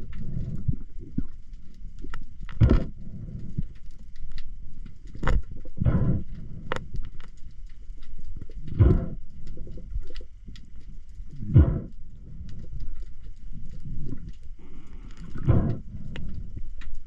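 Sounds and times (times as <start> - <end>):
small clicks in water: 0.0 - 17.0
breathing through a snorkel: 0.1 - 0.8, 2.6 - 3.9, 5.7 - 7.0, 8.6 - 9.8, 11.3 - 16.8.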